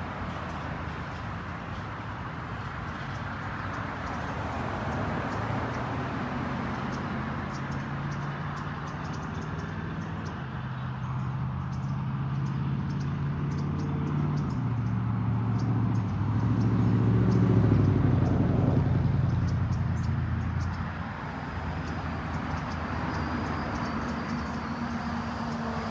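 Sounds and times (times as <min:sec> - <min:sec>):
vehicle engine humming: 0:00.0 - 0:25.9.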